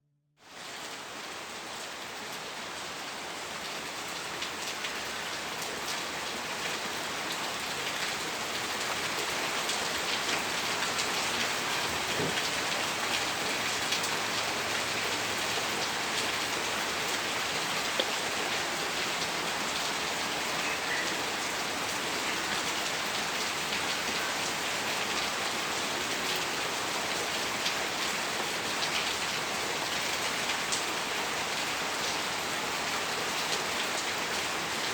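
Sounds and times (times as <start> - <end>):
steady rain falling: 0.4 - 34.9.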